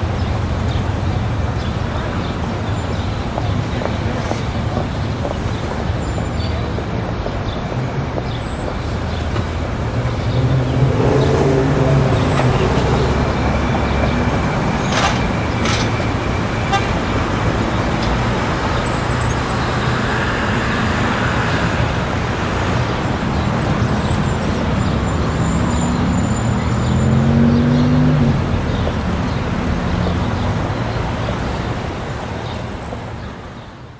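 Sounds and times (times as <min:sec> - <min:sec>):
cars driving past: 0:00.0 - 0:33.5
car horn tooting: 0:11.9 - 0:17.5.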